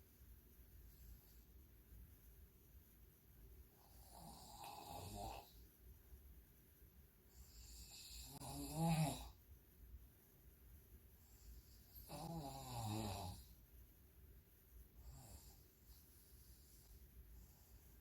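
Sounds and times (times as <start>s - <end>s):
woman snoring: 3.9s - 5.5s, 7.5s - 9.4s, 12.0s - 13.5s.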